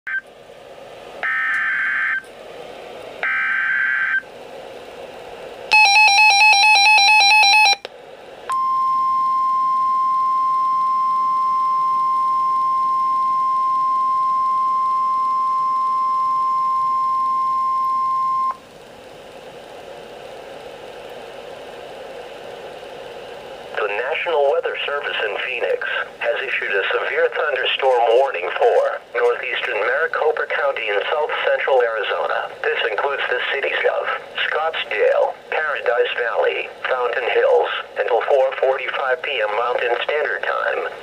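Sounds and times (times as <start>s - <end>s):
steady warning alarm tone: 1.2s - 2.3s, 3.2s - 4.3s, 5.7s - 7.9s, 8.5s - 18.6s
radio hiss: 21.8s - 41.0s.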